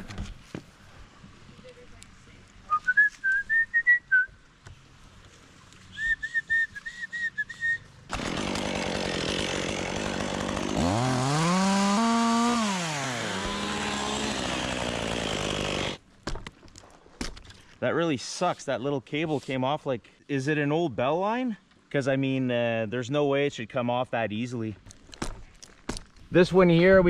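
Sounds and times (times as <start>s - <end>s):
short high whistled chirps: 2.7s - 4.4s, 5.9s - 7.9s
chainsaw running and revving: 8.1s - 16.0s.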